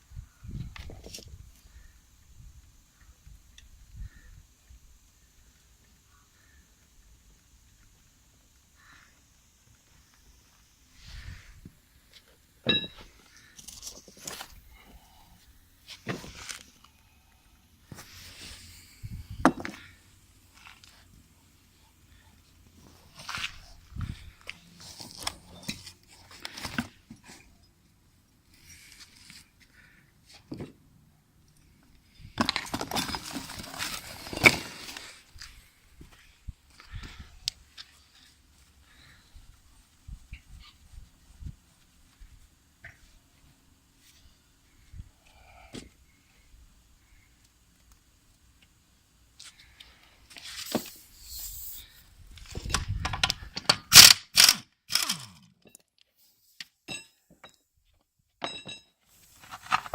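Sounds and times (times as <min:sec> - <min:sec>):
metal tools clinking and rattling: 0:12.7 - 0:14.0.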